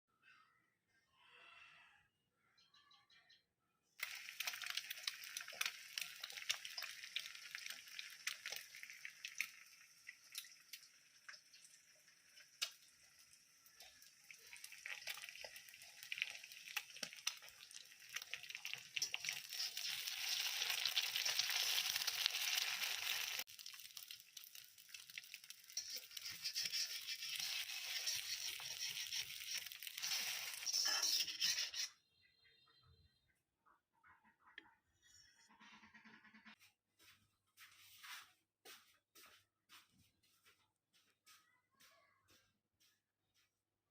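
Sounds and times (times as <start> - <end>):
food sizzling in a pan: 4.0 - 31.9.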